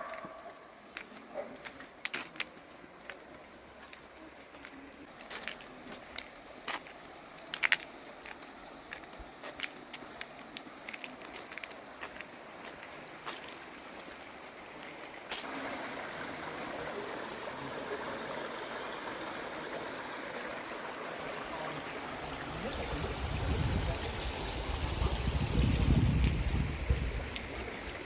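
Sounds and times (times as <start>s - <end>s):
creek water running: 0.0s - 28.0s
wind rumble on microphone: 22.8s - 28.0s.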